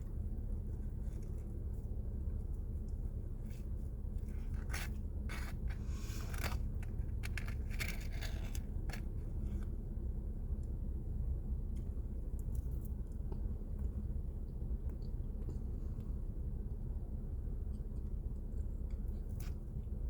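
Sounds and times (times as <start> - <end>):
steady low hum: 0.0 - 20.0
short scrapes and crackles: 2.8 - 9.8.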